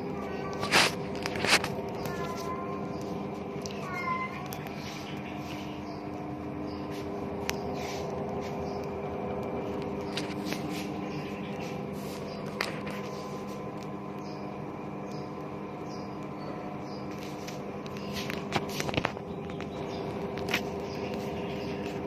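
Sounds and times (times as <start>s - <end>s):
washing machine hum: 0.0s - 22.0s.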